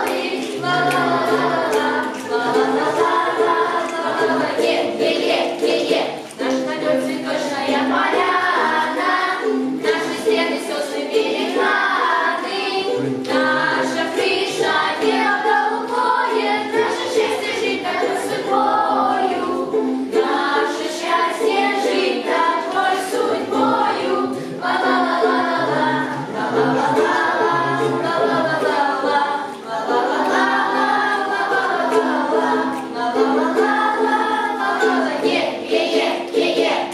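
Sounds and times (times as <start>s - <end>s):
group of voices singing: 0.0s - 36.9s
strummed ukulele chords: 0.0s - 36.9s.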